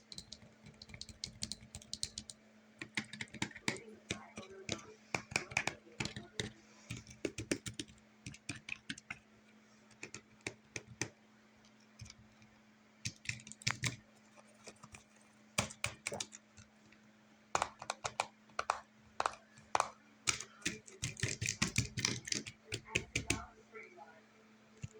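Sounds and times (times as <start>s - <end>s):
fidget buttons clicking: 17.6s - 23.5s.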